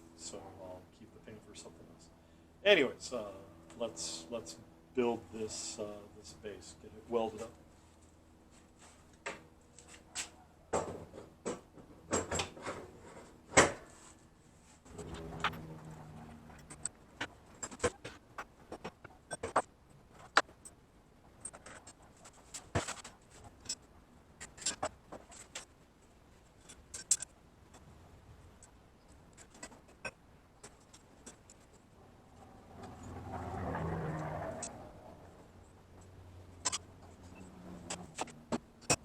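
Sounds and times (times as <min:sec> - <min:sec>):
low hum: 0:14.9 - 0:18.6.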